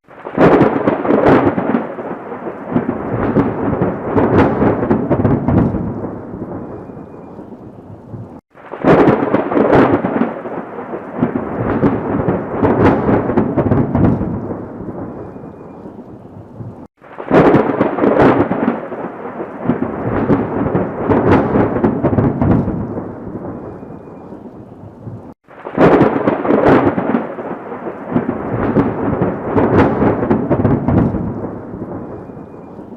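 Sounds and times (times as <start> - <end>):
steady rain: 0.0 - 32.9
thunderclaps rumbling: 0.0 - 32.9.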